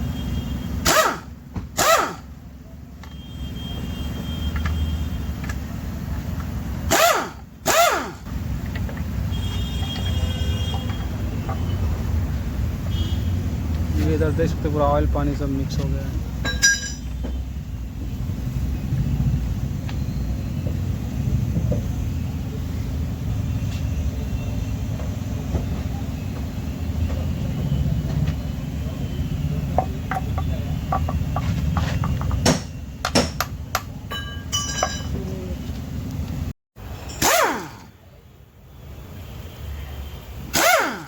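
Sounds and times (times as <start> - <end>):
metal tools clinking and clanking: 16.4 - 17.2, 34.0 - 35.4.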